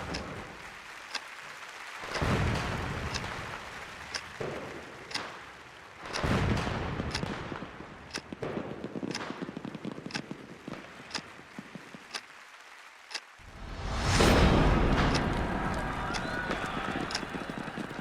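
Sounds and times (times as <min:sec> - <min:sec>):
crackling firework pops: 0:02.0 - 0:12.3, 0:13.7 - 0:18.0
deep firework booms: 0:02.2 - 0:03.5, 0:06.2 - 0:10.1, 0:13.5 - 0:18.0.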